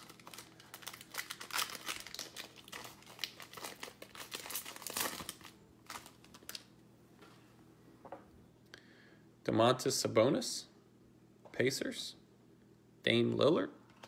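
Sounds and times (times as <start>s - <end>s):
foil wrapper crinkling and tearing: 0.0s - 6.7s.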